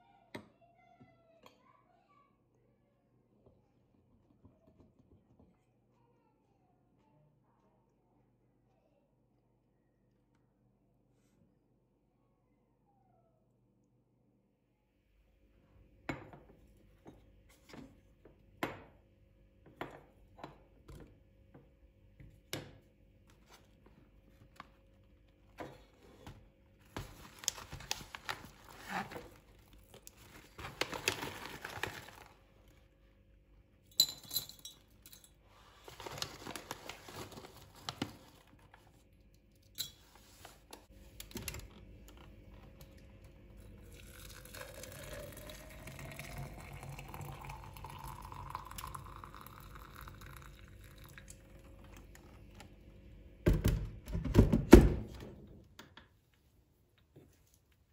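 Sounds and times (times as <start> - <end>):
crinkling and tearing: 26.9 - 32.8, 35.8 - 38.8
water filling a container: 43.8 - 51.8.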